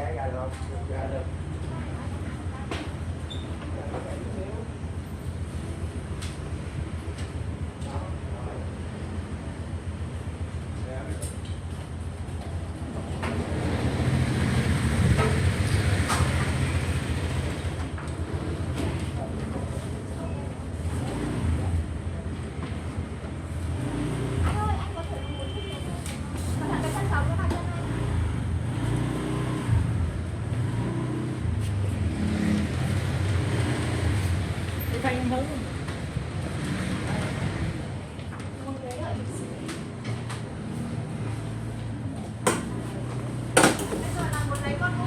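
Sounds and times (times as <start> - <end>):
low vehicle noise: 0.0 - 45.0
road noise: 0.0 - 45.0.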